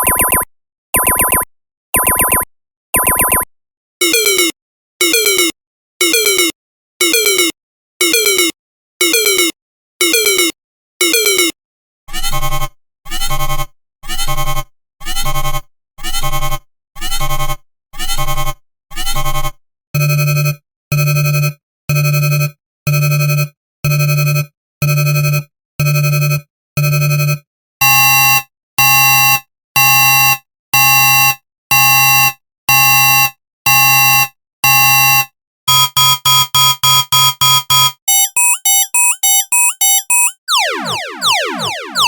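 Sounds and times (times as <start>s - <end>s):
synthesized alarm sounds: 0.0s - 3.5s, 38.1s - 42.0s.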